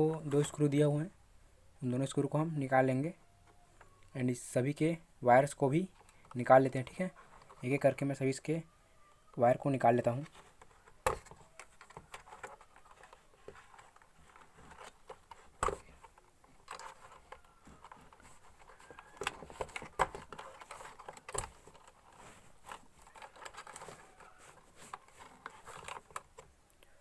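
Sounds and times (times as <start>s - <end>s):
small clicks and scrapes: 5.9s - 7.9s, 10.1s - 27.0s.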